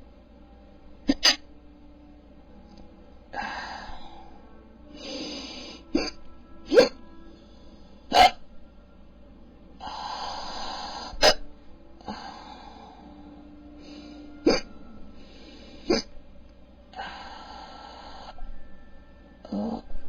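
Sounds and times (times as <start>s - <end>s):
man hiccuping: 1.1s - 1.4s, 5.9s - 7.0s, 14.4s - 14.7s, 15.9s - 16.1s
noisy breaths: 2.5s - 5.9s, 7.2s - 8.7s, 9.8s - 20.0s.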